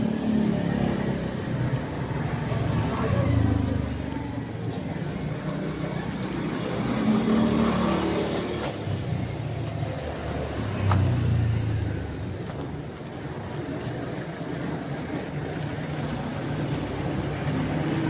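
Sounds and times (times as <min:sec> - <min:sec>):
motor vehicles passing: 0:00.0 - 0:18.0.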